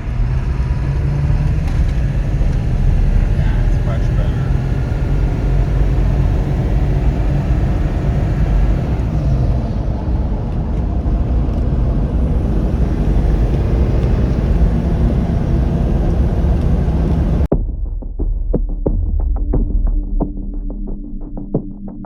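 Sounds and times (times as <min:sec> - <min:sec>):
diesel engine driving under power: 0:00.0 - 0:17.5
road rumble: 0:00.0 - 0:17.5.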